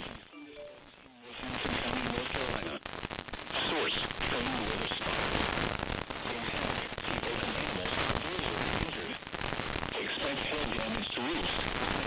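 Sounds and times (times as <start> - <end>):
dense crackly noise: 3.1 - 12.0.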